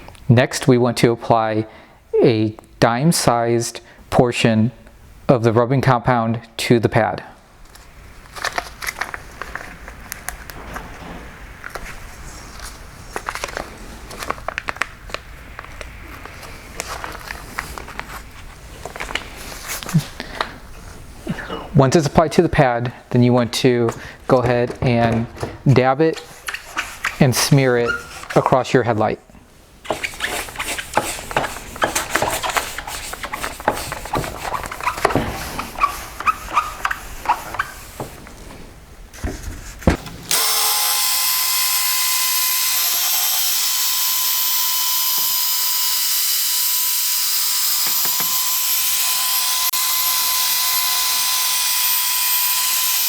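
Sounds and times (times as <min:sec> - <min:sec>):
packet crinkling: 0:07.7 - 0:10.6, 0:12.6 - 0:20.0
short squeaks: 0:27.8 - 0:28.4
pad rubbing on plastic: 0:29.8 - 0:38.2.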